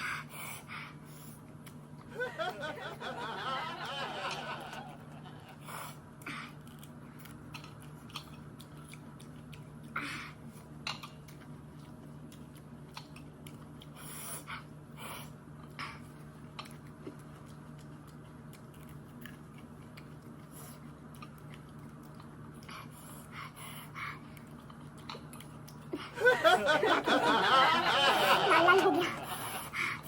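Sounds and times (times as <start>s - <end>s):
steady low hum: 0.0s - 30.0s
person chewing crunchy chillies: 5.1s - 26.2s.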